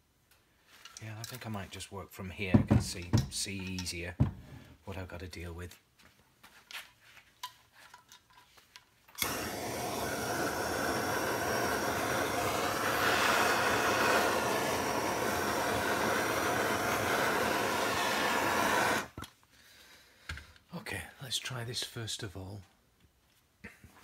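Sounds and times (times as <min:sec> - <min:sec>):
heat gun fan blowing: 0:09.2 - 0:19.2.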